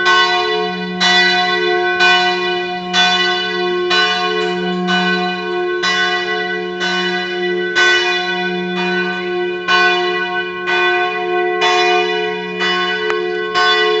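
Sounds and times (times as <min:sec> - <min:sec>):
large church bell ringing: 0:00.0 - 0:14.0.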